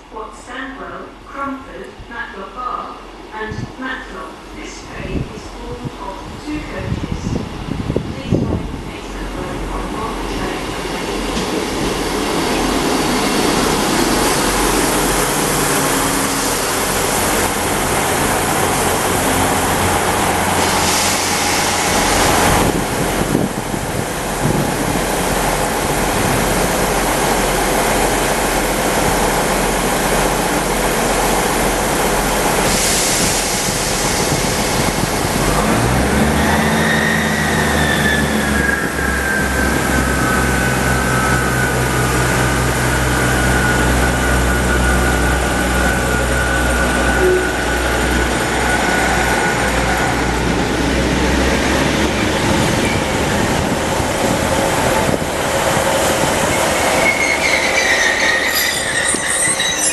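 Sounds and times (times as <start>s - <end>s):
diesel train engine: 0.0s - 59.9s
high whine falling in pitch: 43.8s - 49.8s.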